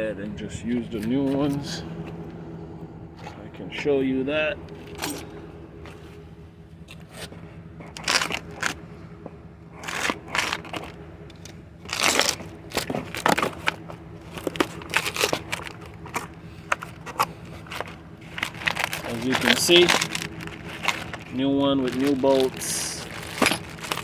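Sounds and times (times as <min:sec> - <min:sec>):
faint steady hum: 0:00.0 - 0:24.0
packaging crinkling: 0:07.9 - 0:08.8, 0:09.8 - 0:24.0.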